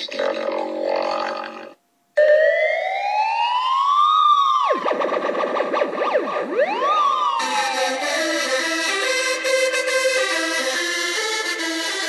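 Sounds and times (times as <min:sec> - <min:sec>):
electronic siren wail: 0:02.2 - 0:11.6
electronic dance music: 0:04.6 - 0:11.9.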